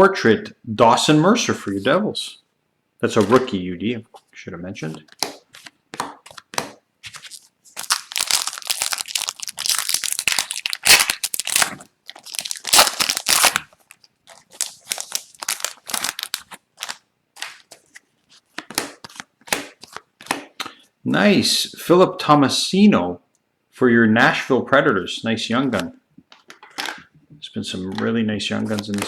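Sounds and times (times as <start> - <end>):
card packaging crinkling and tearing: 5.1 - 20.4, 27.8 - 29.0.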